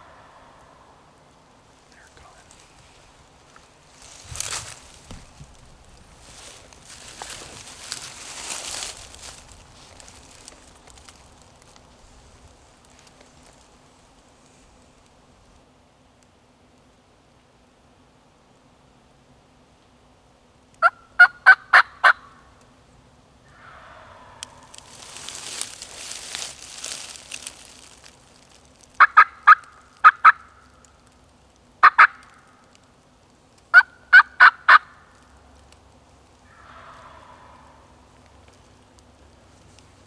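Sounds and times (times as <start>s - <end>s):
turkey yelps: 20.8s - 22.4s, 23.5s - 25.6s, 29.0s - 30.6s, 31.8s - 32.5s, 33.7s - 35.0s, 36.4s - 38.3s
faint soft bird calls: 20.8s - 31.1s, 33.7s - 40.0s.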